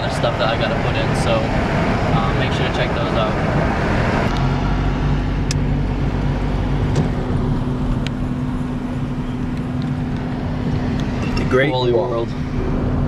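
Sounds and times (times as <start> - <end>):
car cabin road and engine rumble: 0.0 - 13.0
constant low hum: 0.0 - 13.0.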